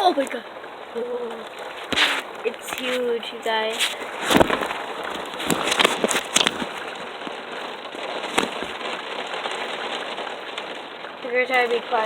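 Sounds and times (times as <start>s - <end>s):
heavy rain hissing: 0.0s - 12.0s.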